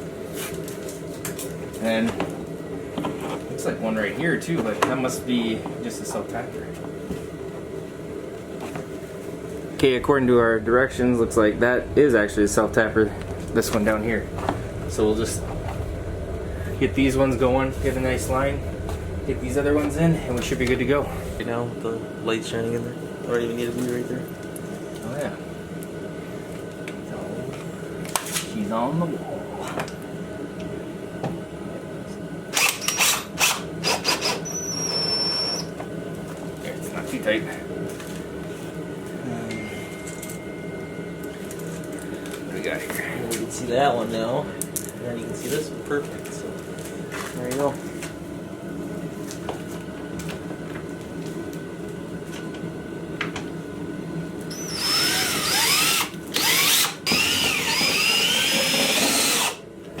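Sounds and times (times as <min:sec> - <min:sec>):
steady low hum: 0:00.0 - 1:00.0
cordless drill driving screws: 0:32.6 - 0:34.6, 0:54.5 - 0:59.6.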